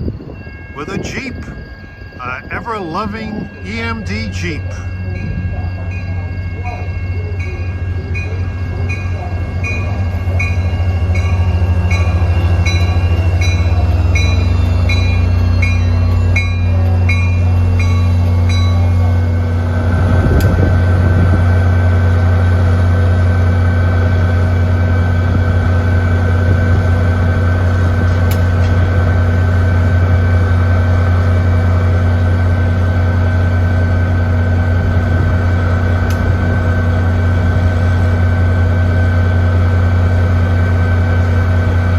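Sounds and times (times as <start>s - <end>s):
steady high-pitched tones: 0.0s - 19.7s
diesel locomotive engine drone: 0.0s - 41.9s
train bell ringing: 0.0s - 41.9s.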